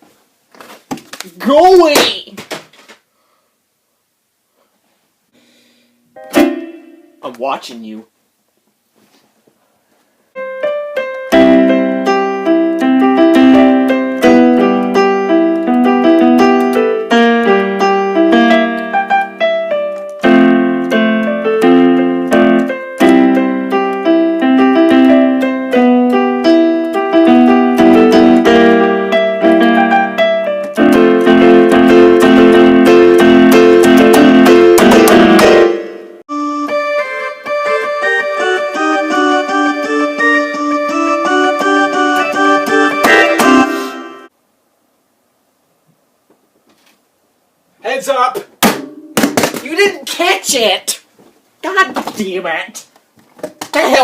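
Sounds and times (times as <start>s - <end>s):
electric keyboard piano: 6.2s - 7.2s, 10.4s - 44.3s.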